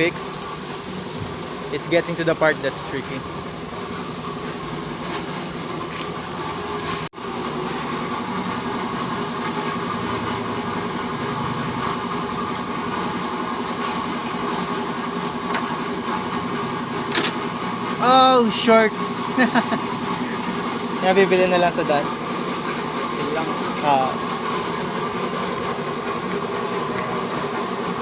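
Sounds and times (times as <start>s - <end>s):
machine running with hum: 0.0s - 28.0s.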